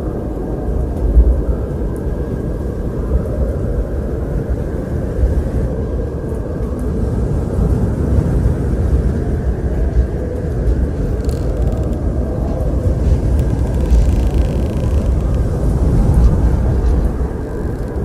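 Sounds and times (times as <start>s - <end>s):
wind blowing: 8.6s - 18.0s.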